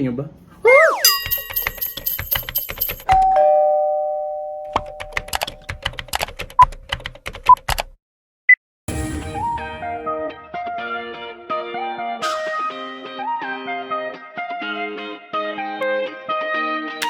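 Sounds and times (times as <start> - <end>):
short beeps: 0.6 - 2.0.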